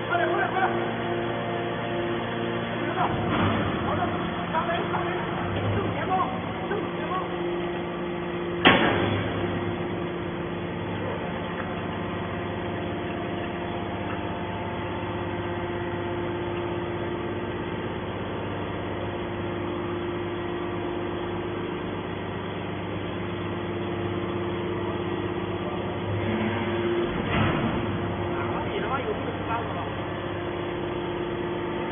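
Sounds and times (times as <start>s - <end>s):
hydraulic machine hum: 0.0s - 31.9s.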